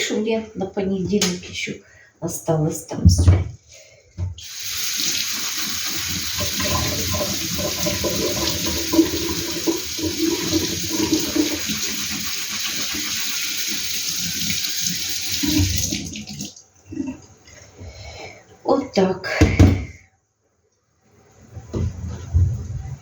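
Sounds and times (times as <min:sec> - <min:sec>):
tap running into a sink: 0:04.4 - 0:16.6.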